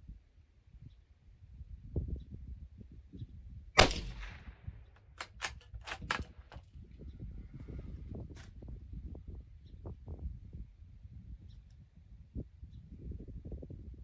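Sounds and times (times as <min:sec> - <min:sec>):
rifle bolt clicking: 0:03.8 - 0:04.5, 0:05.2 - 0:06.5
rifle shot: 0:03.8 - 0:06.3.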